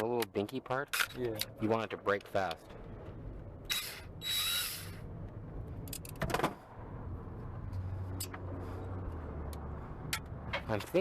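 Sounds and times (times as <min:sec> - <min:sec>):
power drill whirring: 0:03.7 - 0:05.0.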